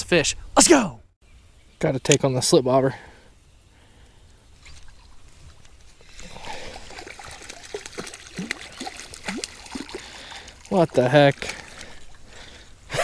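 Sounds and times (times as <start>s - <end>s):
water splashing and trickling: 4.5s - 13.0s
bubbly plops and clicks: 6.8s - 10.5s.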